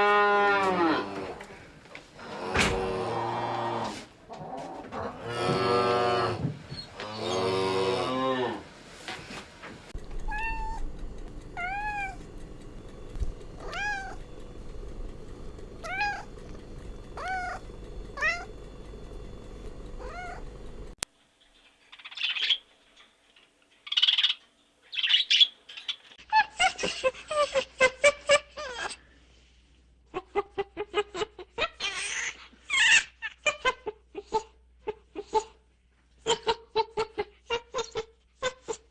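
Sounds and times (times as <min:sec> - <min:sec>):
cattle mooing: 0:00.0 - 0:01.5, 0:02.2 - 0:08.7
rapid clicking pulses: 0:10.0 - 0:21.0
cat meowing: 0:10.2 - 0:10.9, 0:11.6 - 0:12.2, 0:13.6 - 0:14.2, 0:15.8 - 0:16.3, 0:17.2 - 0:18.5, 0:20.0 - 0:20.5
short noisy animal calls: 0:17.1 - 0:18.6.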